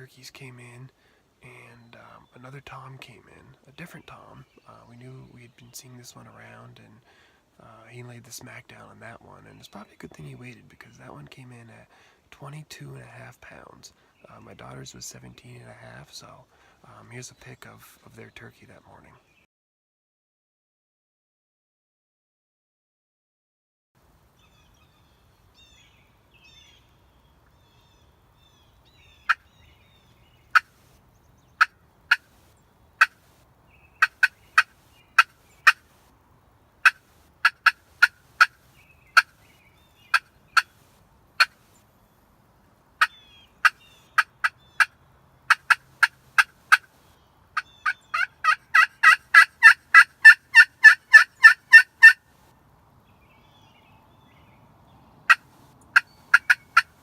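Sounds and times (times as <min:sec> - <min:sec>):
turkey call clucks: 0:33.0 - 0:33.2, 0:34.0 - 0:35.9, 0:36.8 - 0:40.8, 0:43.0 - 0:46.9, 0:47.6 - 0:52.2, 0:55.3 - 0:57.0
turkey call yelps: 0:34.0 - 0:35.8, 0:36.8 - 0:39.4, 0:47.6 - 0:52.2, 0:55.3 - 0:57.0.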